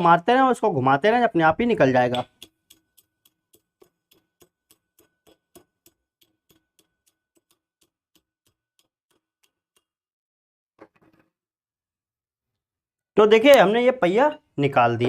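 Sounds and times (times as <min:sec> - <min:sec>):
small hammer tapping metal: 0:02.0 - 0:10.0.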